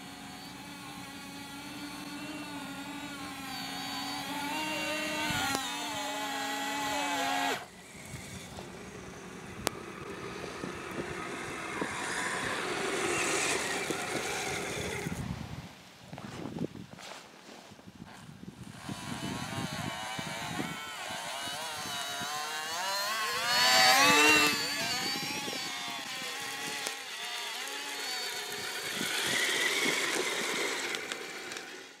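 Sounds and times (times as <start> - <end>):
model vehicle electric motors whining: 0.0 - 15.4, 18.1 - 32.0.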